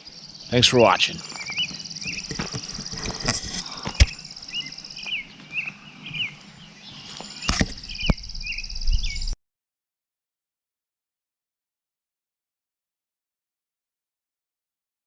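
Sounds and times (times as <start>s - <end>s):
bird chirping: 0.0s - 9.4s
insects trilling: 0.0s - 9.4s
sharp click: 7.4s - 8.2s.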